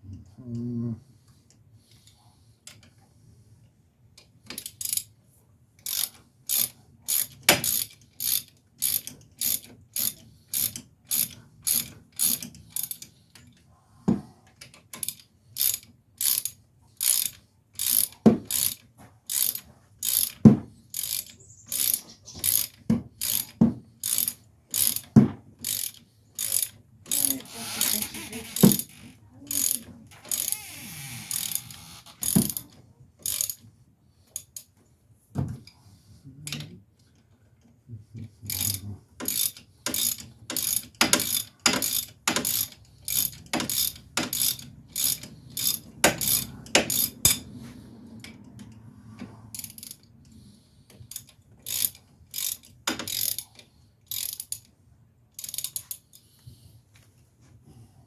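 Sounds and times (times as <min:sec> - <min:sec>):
ratchet wrench clicking: 0:05.8 - 0:13.1, 0:15.0 - 0:32.6, 0:33.2 - 0:33.6, 0:38.5 - 0:47.5, 0:49.5 - 0:50.1, 0:51.1 - 0:54.7, 0:55.3 - 0:56.2.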